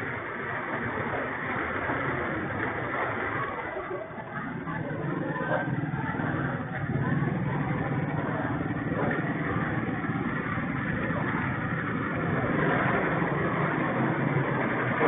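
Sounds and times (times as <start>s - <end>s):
street noise: 0.0s - 15.0s
traffic engines humming: 0.0s - 15.0s.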